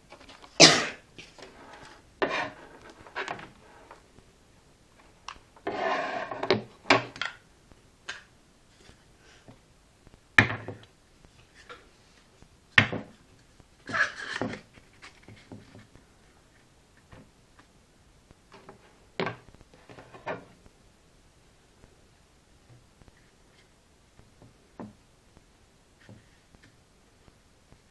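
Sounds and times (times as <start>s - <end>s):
objects rubbing and scraping: 1.2s - 4.1s, 5.0s - 6.7s, 13.8s - 16.7s, 18.5s - 20.6s.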